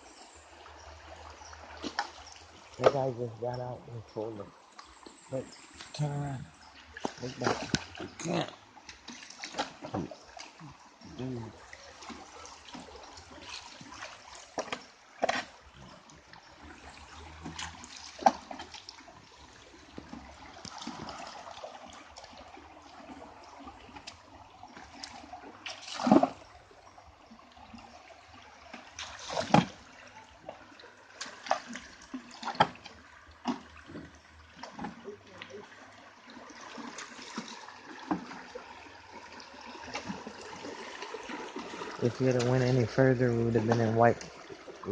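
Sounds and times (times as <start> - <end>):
river water trickling: 0.0 - 44.9
sharp splashes and knocks: 1.6 - 3.6, 6.8 - 10.7, 11.8 - 26.6, 28.7 - 35.6, 36.4 - 44.7.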